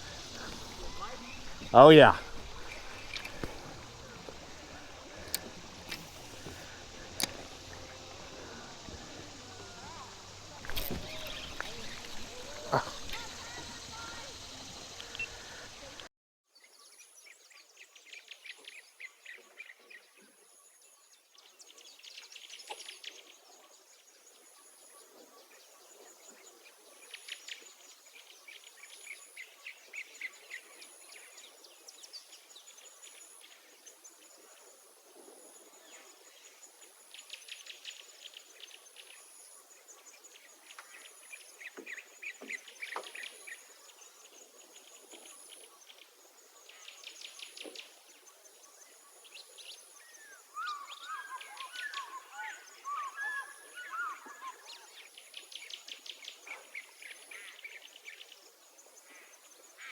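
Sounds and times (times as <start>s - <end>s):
birds chirping rapidly: 0.0s - 16.1s
high-pitched insect buzz: 0.0s - 16.1s.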